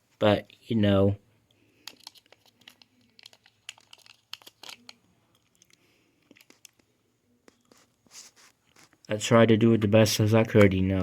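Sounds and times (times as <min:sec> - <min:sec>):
small clicks scrapes and crinkling: 0:01.8 - 0:09.1.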